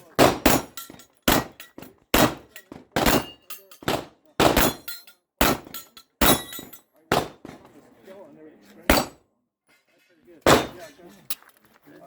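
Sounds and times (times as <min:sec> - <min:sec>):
pistol shots with echo: 0:00.2 - 0:07.4, 0:08.9 - 0:09.2, 0:10.5 - 0:10.8.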